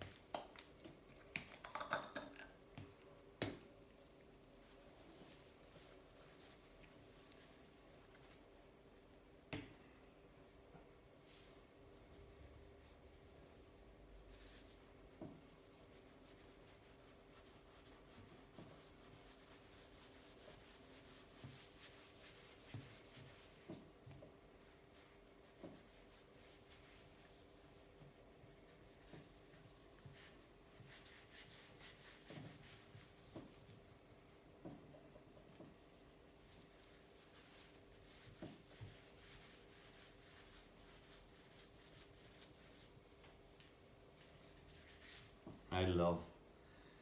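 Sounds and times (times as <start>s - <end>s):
cloth rubbing on metal: 4.0s - 8.8s, 24.6s - 45.6s.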